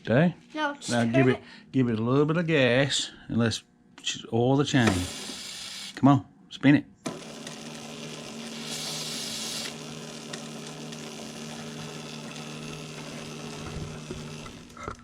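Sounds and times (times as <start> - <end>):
electric motor humming: 4.8 - 6.0, 7.1 - 15.0
spray hiss: 5.0 - 6.0.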